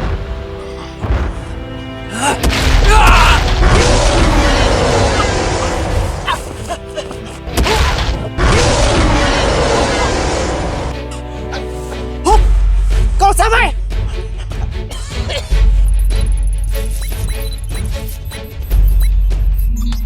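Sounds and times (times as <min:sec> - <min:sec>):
dramatic background music: 0:00.0 - 0:20.0
booming rushing sound effect: 0:03.4 - 0:06.3.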